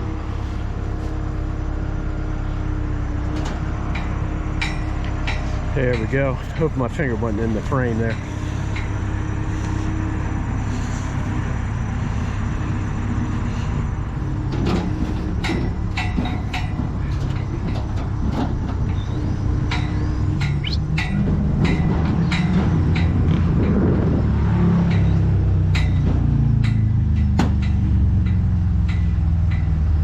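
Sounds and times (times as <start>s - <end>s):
crane engine running: 0.0s - 30.0s
metallic clicks and clanks: 14.5s - 23.8s, 24.7s - 30.0s.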